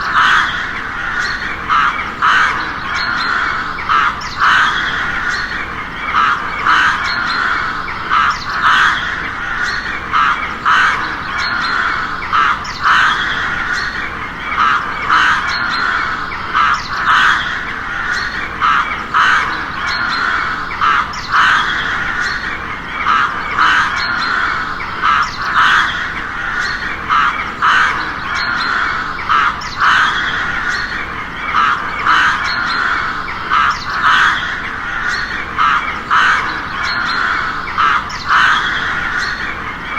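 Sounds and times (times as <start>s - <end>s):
crows cawing: 0.0s - 39.9s.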